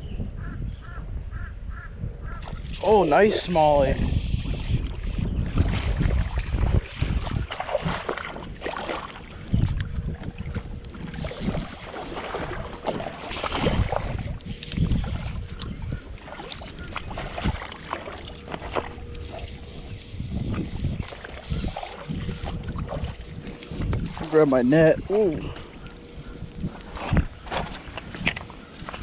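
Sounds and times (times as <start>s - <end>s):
low microphone rumble: 0.0s - 29.0s
river water splashing: 4.6s - 9.7s, 10.3s - 29.0s.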